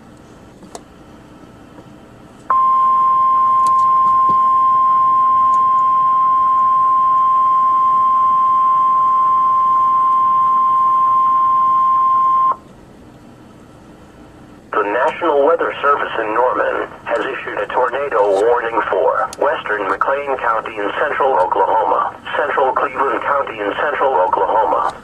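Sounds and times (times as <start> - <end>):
steady high alarm tone: 2.5 - 12.6
faint radio hiss: 13.4 - 25.0.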